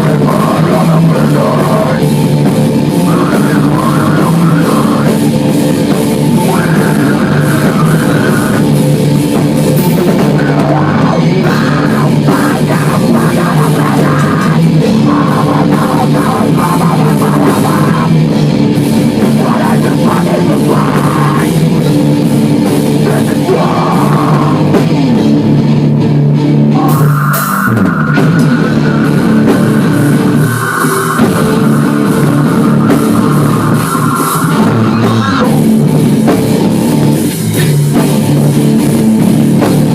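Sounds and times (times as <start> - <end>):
heavy metal music: 0.0 - 39.9.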